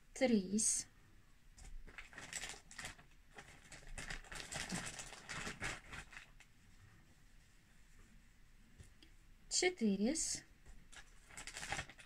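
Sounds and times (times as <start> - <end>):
rustling and crinkling packaging: 1.6 - 6.6, 10.7 - 12.0.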